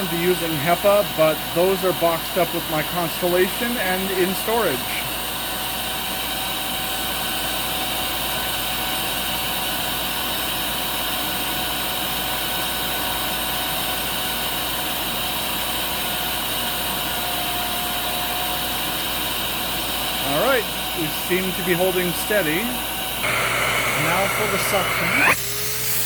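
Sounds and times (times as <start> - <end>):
vacuum cleaner motor whining: 19.5 - 26.0.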